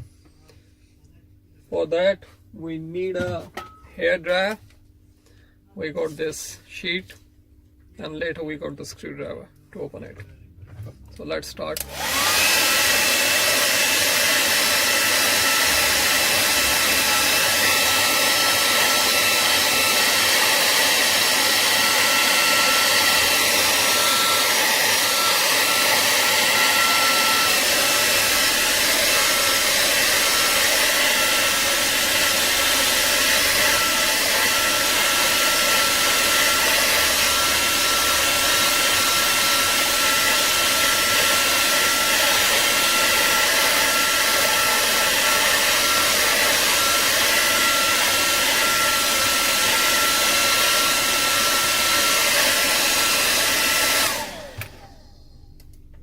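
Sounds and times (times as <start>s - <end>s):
hair dryer running: 11.6s - 55.5s.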